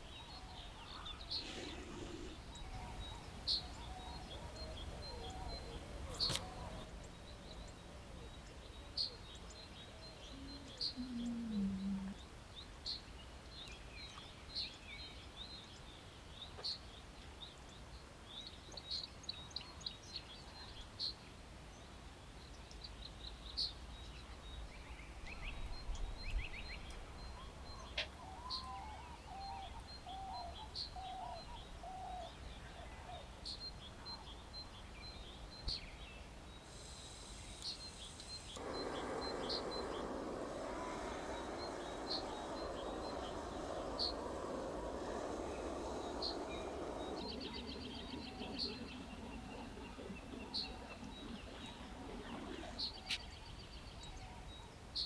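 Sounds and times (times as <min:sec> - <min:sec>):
lower repeated bird notes: 0:00.0 - 0:14.2, 0:35.0 - 0:55.0
birds chirping: 0:00.0 - 0:17.0, 0:23.3 - 0:55.0
steady low rumble: 0:38.3 - 0:53.5.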